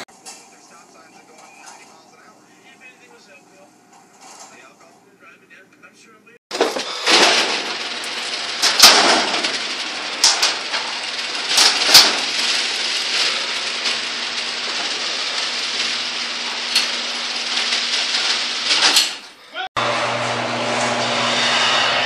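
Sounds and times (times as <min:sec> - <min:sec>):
sharp metallic clanks: 0:06.5 - 0:19.4
garage door opener running: 0:06.5 - 0:22.0.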